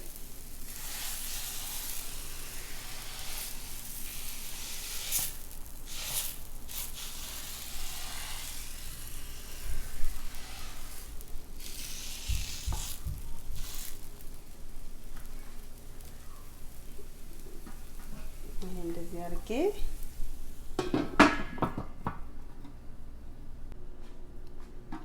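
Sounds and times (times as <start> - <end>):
batter sizzling on a griddle: 0.0 - 22.3.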